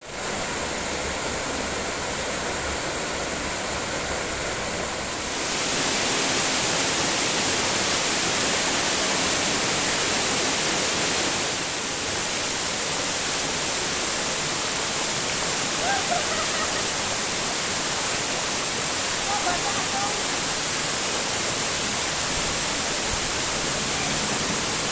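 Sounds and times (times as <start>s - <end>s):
waterfall rushing: 0.1s - 24.9s.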